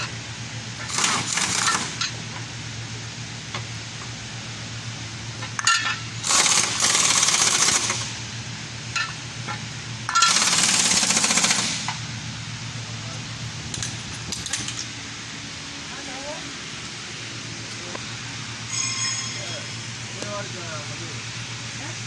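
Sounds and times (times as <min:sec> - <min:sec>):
steady low hum: 0:00.0 - 0:22.0
pneumatic impact wrench hammering: 0:00.8 - 0:02.2, 0:05.4 - 0:08.2, 0:09.0 - 0:12.0.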